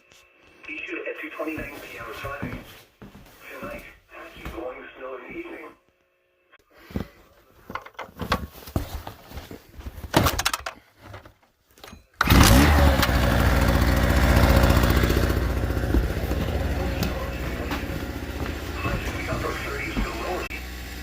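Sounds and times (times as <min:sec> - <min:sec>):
generator engine running: 0:12.2 - 0:21.0.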